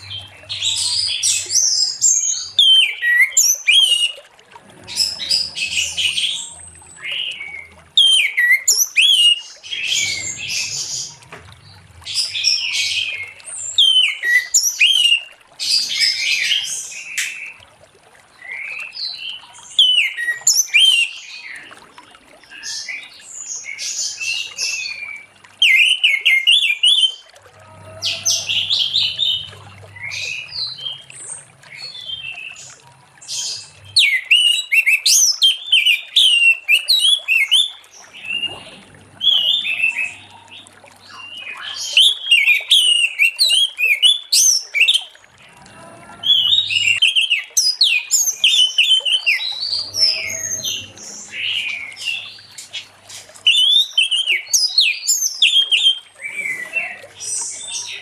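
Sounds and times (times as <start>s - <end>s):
thrush singing: 27.5s - 30.6s.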